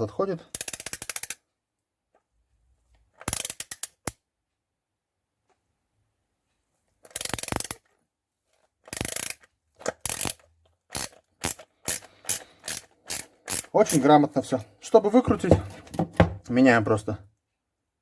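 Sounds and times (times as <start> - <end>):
ratcheting screwdriver clicking: 0.5 - 1.4, 3.2 - 4.2, 7.1 - 7.9, 8.8 - 14.1.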